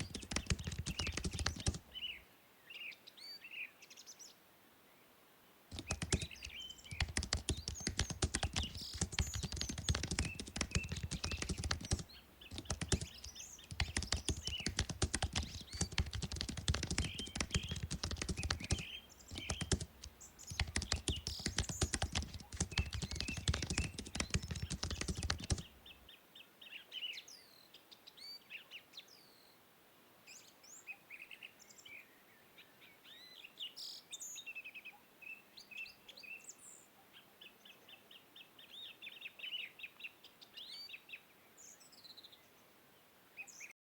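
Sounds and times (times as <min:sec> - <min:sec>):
fast keyboard typing: 0:00.0 - 0:01.8, 0:05.7 - 0:25.7
birds chirping: 0:00.0 - 0:02.2, 0:05.7 - 0:26.0.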